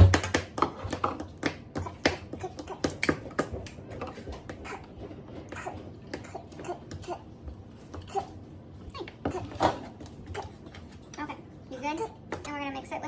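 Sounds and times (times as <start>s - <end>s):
kitchen items clicking and knocking: 0.0s - 7.1s.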